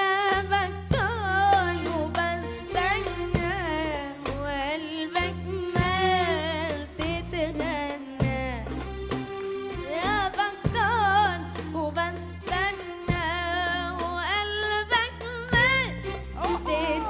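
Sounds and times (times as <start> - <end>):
steady bass: 0.0 - 17.0
ornamented singing melody: 9.9 - 17.0.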